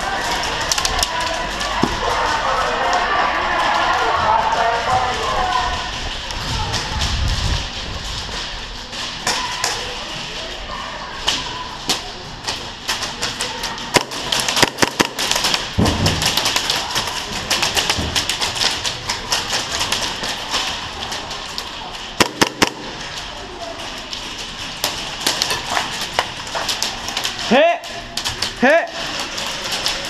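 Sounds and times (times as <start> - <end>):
airsoft guns firing: 13.9 - 18.2, 22.2 - 23.1.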